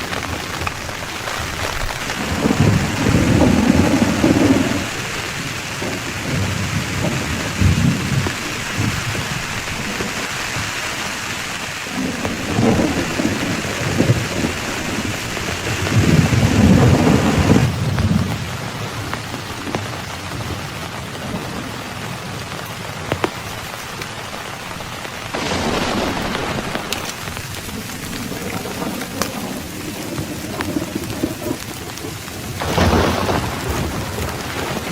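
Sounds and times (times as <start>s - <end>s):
heavy rain pouring: 0.0s - 34.9s
thunder rumbling: 0.0s - 34.9s.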